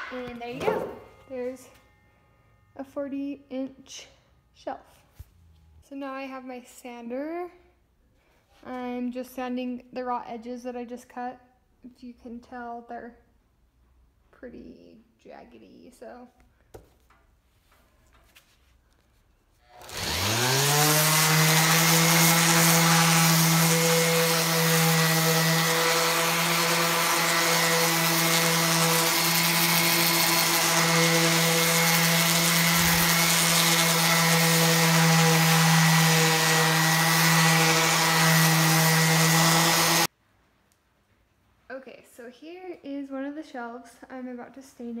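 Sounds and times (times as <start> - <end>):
electric sander sanding wood: 19.7 - 40.1.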